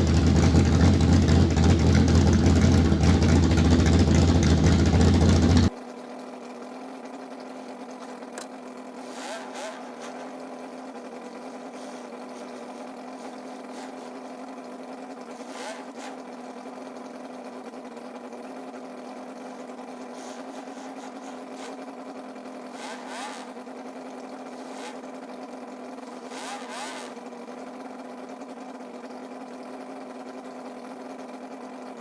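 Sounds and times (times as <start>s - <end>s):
truck engine idling: 0.0s - 32.0s
short hisses: 9.0s - 14.4s, 19.4s - 21.8s.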